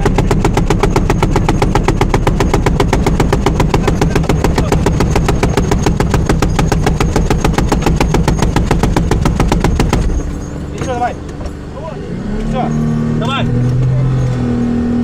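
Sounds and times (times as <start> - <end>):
heavy machine gun firing: 0.0 - 10.4
low engine drone: 0.0 - 15.0.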